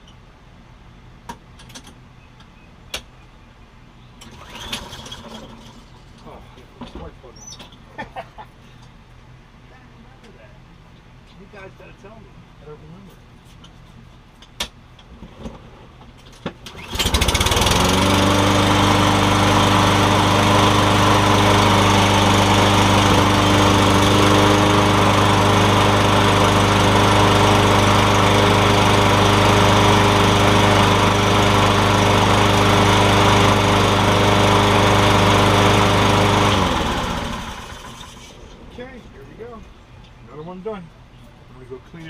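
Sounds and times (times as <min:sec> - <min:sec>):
lawn mower engine running: 0:04.2 - 0:05.8, 0:16.6 - 0:38.9.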